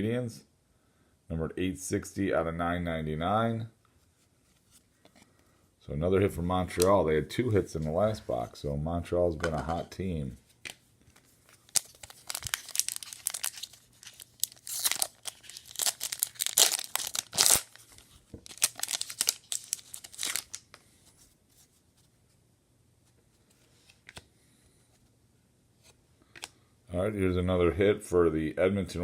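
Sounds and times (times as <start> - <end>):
cards rustling: 6.6 - 8.5, 9.3 - 22.1
wrapper tearing and crinkling: 11.5 - 20.7.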